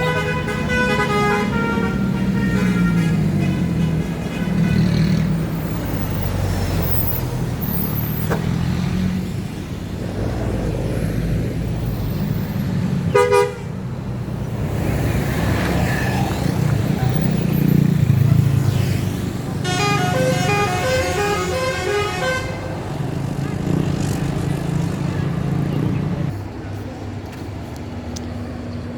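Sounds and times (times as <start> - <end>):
bus horn blast: 0.0 - 5.3, 13.1 - 13.8, 19.6 - 22.8
bus engine running: 19.4 - 28.9
multi-note horn melody: 19.6 - 22.7.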